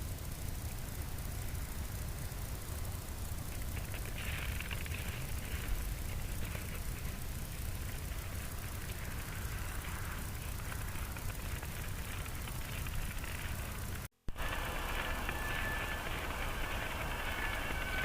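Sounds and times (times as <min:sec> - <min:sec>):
hiss: 0:00.0 - 0:18.0
low outdoor rumble: 0:00.0 - 0:18.0
faint high whistle: 0:14.4 - 0:18.0.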